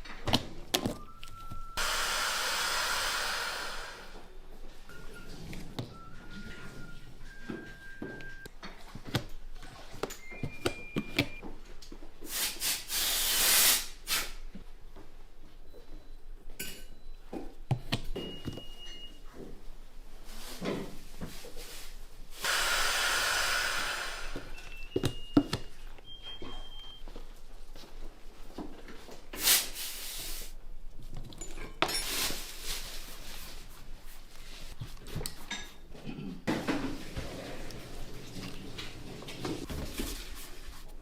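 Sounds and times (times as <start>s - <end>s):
loud rush of hiss: 1.8s - 4.2s, 12.3s - 14.4s, 22.4s - 24.6s.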